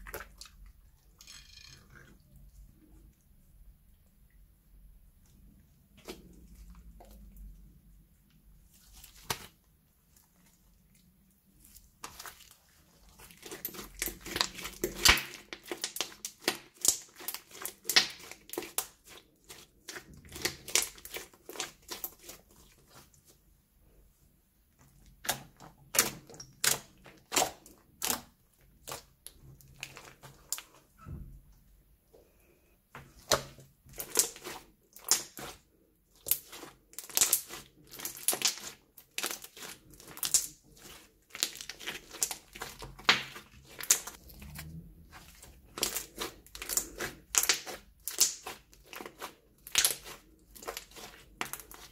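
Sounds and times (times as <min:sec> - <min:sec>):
slime squelching with sticky clicks: 0:00.0 - 0:03.3, 0:11.6 - 0:23.3, 0:24.8 - 0:31.2, 0:33.0 - 0:51.9.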